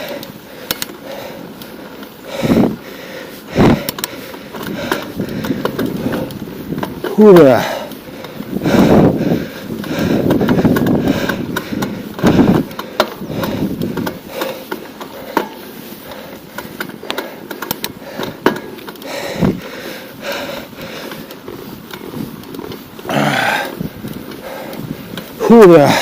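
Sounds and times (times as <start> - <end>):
bicycle clicks and rattles: 0.0 - 26.0
wind buffeting microphone: 2.3 - 2.8, 3.5 - 4.0, 4.6 - 14.4, 19.1 - 26.0.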